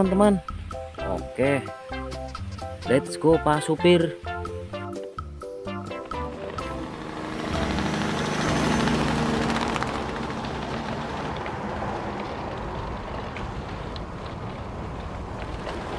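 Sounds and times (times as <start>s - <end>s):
truck engine running: 4.2s - 15.4s.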